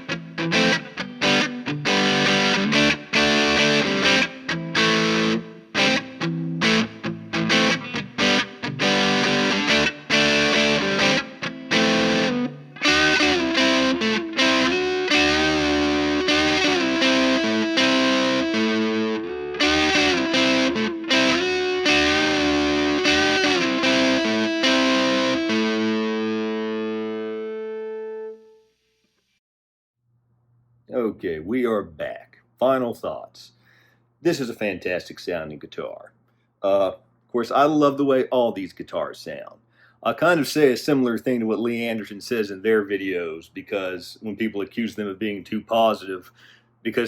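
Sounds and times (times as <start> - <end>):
distorted electric guitar chords: 0.0 - 28.6.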